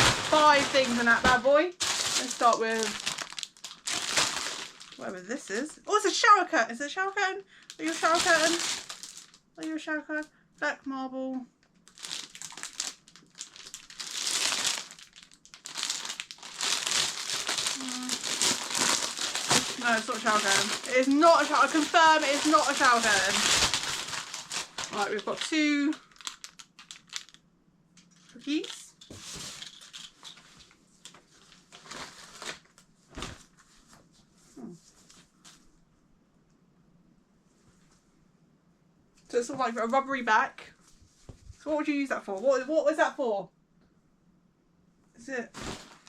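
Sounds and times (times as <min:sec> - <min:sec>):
packaging crinkling and rustling: 0:00.0 - 0:05.7, 0:07.6 - 0:09.7, 0:11.6 - 0:27.4, 0:28.1 - 0:33.6, 0:45.5 - 0:46.0.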